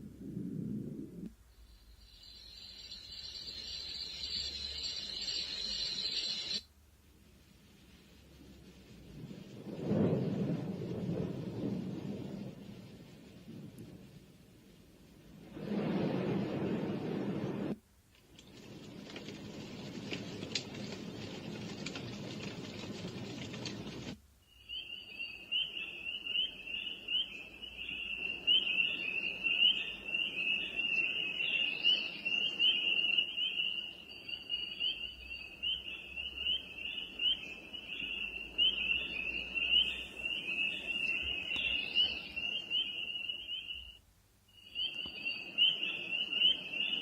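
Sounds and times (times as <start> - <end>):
cricket chorus from small speaker: 1.5 - 6.7, 24.4 - 47.0.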